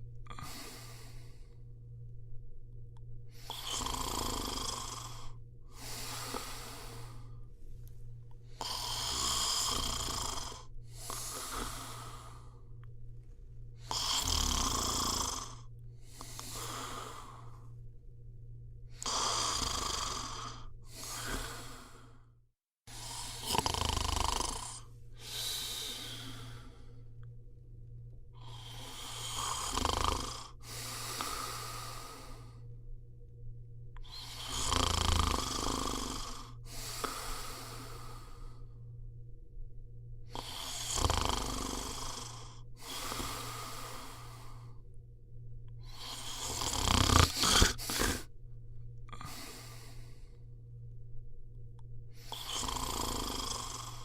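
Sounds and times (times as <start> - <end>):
faint low hum: 0.0 - 54.0
person snoring: 0.3 - 1.6, 3.3 - 7.5, 8.4 - 12.8, 13.8 - 17.8, 18.9 - 22.2, 22.9 - 27.2, 28.4 - 32.7, 34.0 - 38.8, 40.2 - 44.8, 45.8 - 48.3, 49.1 - 50.4, 52.2 - 54.0.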